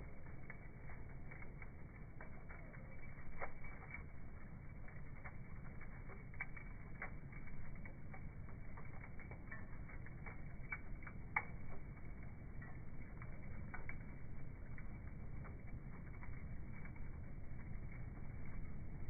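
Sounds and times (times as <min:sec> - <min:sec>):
campfire crackling and popping: 0:00.0 - 0:19.0
low steady rumble: 0:00.0 - 0:19.0.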